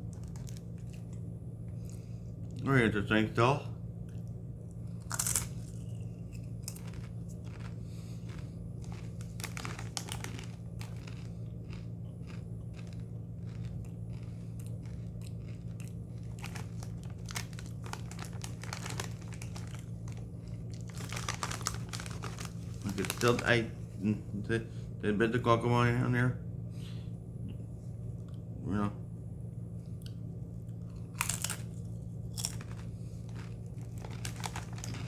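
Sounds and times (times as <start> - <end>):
chip bag crinkling: 0.0 - 1.2, 4.9 - 23.7, 30.9 - 35.0
chips crunching: 0.0 - 2.0, 4.1 - 23.7, 30.0 - 35.0
steady low hum: 0.0 - 35.0.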